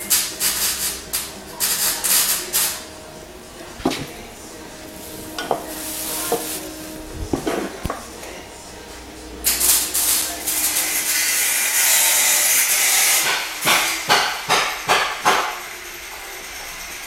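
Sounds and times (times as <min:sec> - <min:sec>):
compressed air gun hissing: 0:00.0 - 0:02.8, 0:05.0 - 0:07.0.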